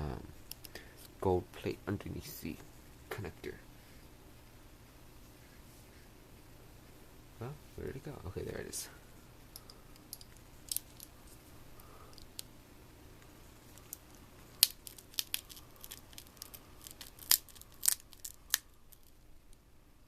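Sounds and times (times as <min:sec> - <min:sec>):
plastic parts clicking and crackling: 0:09.6 - 0:11.1, 0:12.1 - 0:12.5, 0:13.2 - 0:19.6.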